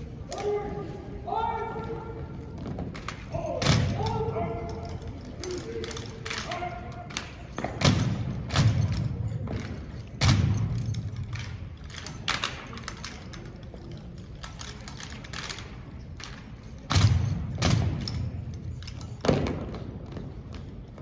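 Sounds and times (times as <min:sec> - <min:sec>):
rifle knocks and thuds echoing: 0:07.1 - 0:11.6, 0:19.2 - 0:20.3.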